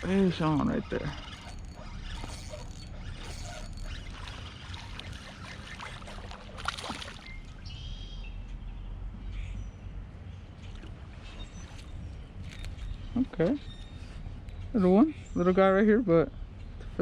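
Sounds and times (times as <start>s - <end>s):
water splashing and trickling: 0.0s - 7.7s.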